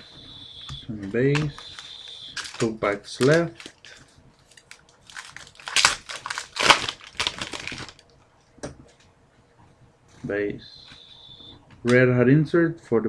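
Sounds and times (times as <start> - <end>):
wrapper tearing and crinkling: 1.4 - 8.1.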